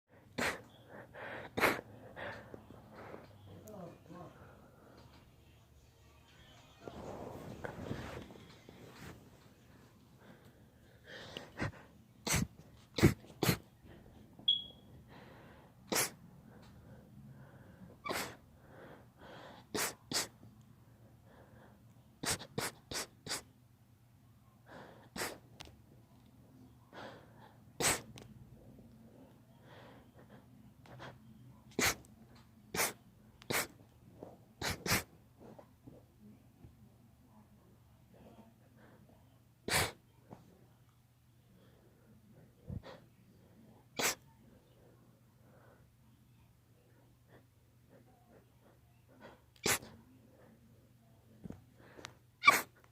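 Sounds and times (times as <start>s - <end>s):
girl sneezing: 12.2s - 13.6s, 15.9s - 16.2s, 18.0s - 18.4s, 19.8s - 20.3s, 27.8s - 28.1s, 31.8s - 32.0s, 32.8s - 33.7s, 34.6s - 35.1s, 39.7s - 40.0s, 44.0s - 44.2s, 49.6s - 49.9s, 52.4s - 52.8s.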